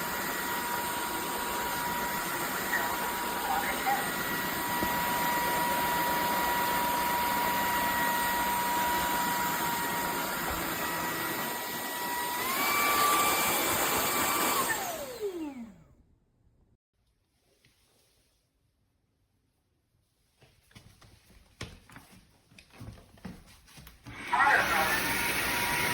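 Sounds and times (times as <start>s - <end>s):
vacuum cleaner motor whining: 0.0s - 15.9s, 24.1s - 25.9s.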